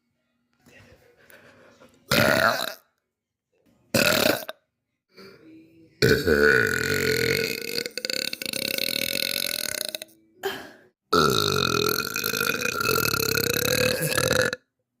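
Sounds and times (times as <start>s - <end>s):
girl burping: 9.7s - 14.6s.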